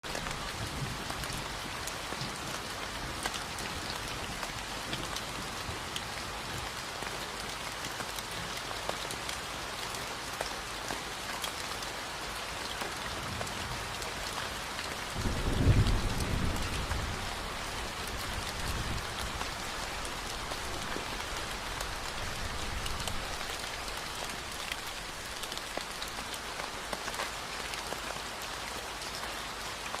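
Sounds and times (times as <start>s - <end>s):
steady rain falling: 0.0s - 30.0s
low rumble of thunder: 15.0s - 23.4s.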